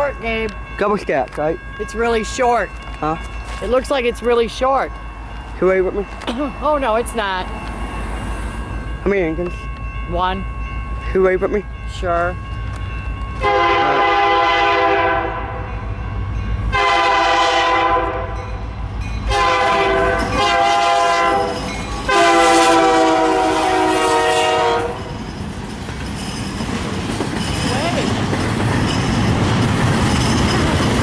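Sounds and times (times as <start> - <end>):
train rumbling past: 0.0 - 31.0
wheels clacking on rails: 0.0 - 31.0
locomotive air horn blasts: 13.4 - 15.6, 16.7 - 18.4, 19.3 - 25.1.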